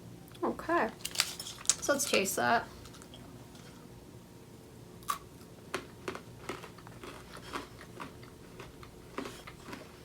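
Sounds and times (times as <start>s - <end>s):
person chewing crunchy toffee: 5.0s - 10.0s.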